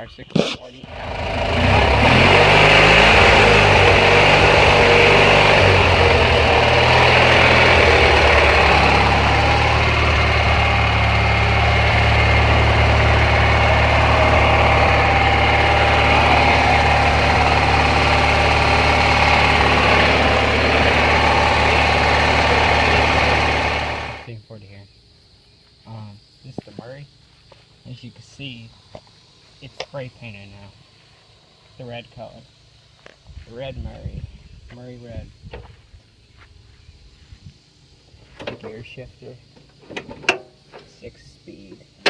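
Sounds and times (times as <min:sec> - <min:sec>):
lawn mower engine idling: 0:00.8 - 0:24.3.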